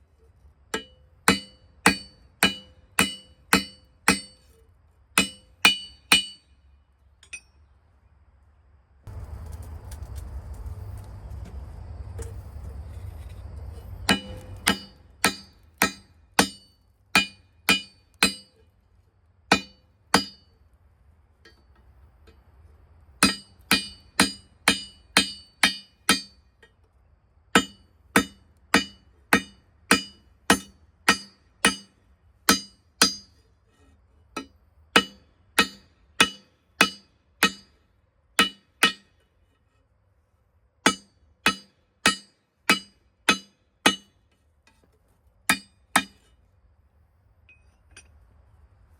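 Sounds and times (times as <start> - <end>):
hammer striking steel on anvil: 0.7 - 4.6, 5.2 - 6.6, 7.2 - 7.6, 14.1 - 18.6, 19.5 - 20.6, 23.2 - 26.5, 27.6 - 33.4, 34.4 - 37.8, 38.4 - 39.2, 40.8 - 44.2, 45.5 - 46.3.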